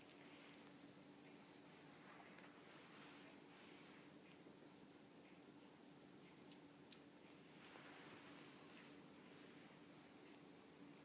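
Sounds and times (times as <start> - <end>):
faint soft rustle: 0.0 - 4.4, 7.2 - 11.0
steady low hum: 0.0 - 11.0.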